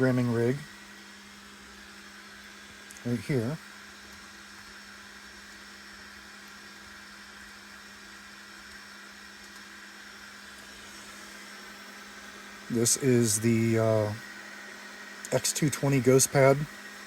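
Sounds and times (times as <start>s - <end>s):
steady hiss: 0.0s - 16.7s.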